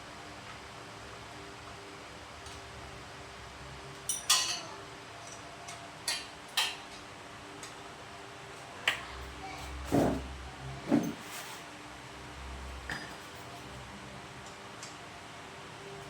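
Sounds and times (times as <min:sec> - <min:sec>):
spanners and bolts clinking on metal: 0:04.0 - 0:07.0.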